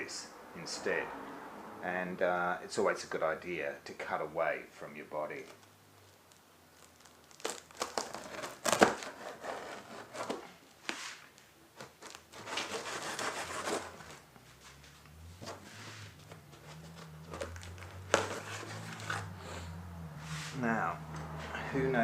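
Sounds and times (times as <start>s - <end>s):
cardboard and tape tearing: 5.4s - 14.3s, 15.4s - 19.4s
blade scraping cut: 12.3s - 14.2s.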